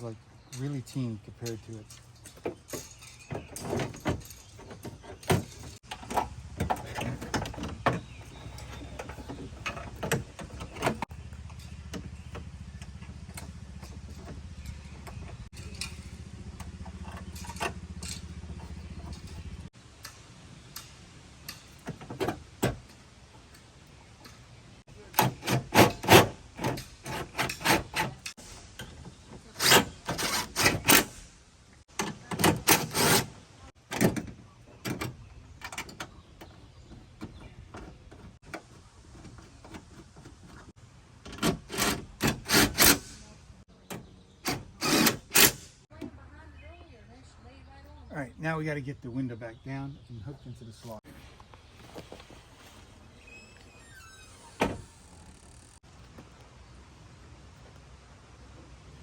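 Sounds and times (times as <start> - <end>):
parts clicking and clattering: 0.0 - 46.1.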